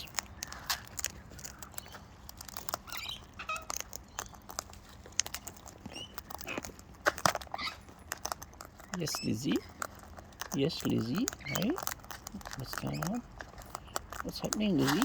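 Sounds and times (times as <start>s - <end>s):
bird chirps: 0.0s - 4.6s, 5.4s - 6.6s, 7.5s - 7.9s, 8.8s - 9.8s, 10.6s - 11.8s
parrots crunching seed: 0.0s - 15.0s.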